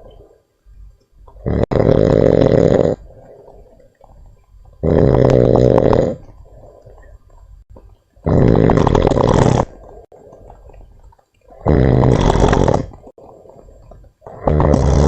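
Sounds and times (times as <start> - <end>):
quiet breathing: 0.0 - 1.4, 2.9 - 4.8, 5.8 - 8.2, 9.6 - 11.7, 12.8 - 14.6
monkey snoring: 1.4 - 3.0, 4.8 - 6.4, 8.2 - 9.7, 11.6 - 13.2, 14.2 - 15.0.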